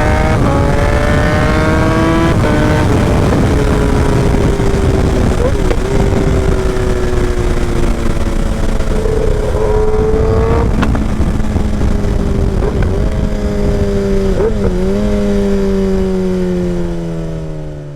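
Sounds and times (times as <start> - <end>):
motorcycle engine while riding: 0.0 - 17.9.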